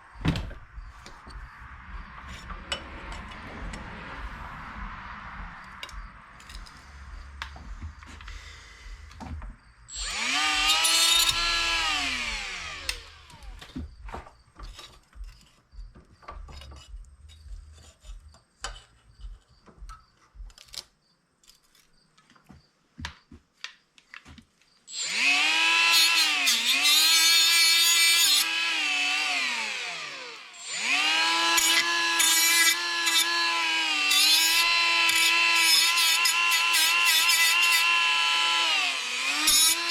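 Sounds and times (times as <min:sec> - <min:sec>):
electric power tool running: 0:09.9 - 0:14.0, 0:24.9 - 0:39.9.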